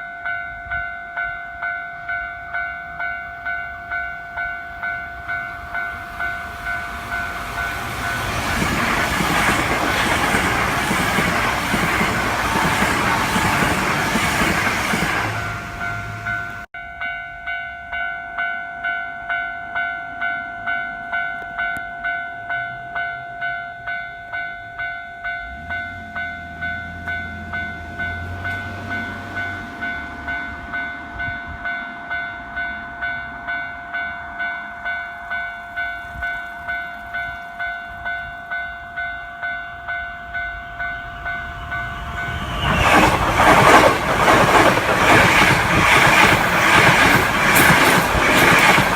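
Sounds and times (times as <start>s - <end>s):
electric train passing: 0.0s - 48.9s
level-crossing warning bell: 0.0s - 48.9s.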